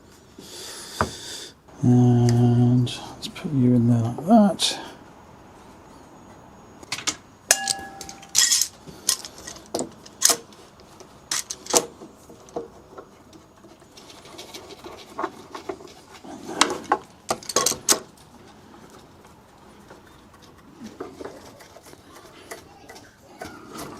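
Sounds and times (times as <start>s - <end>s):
brief metallic ring: 7.5s - 8.6s.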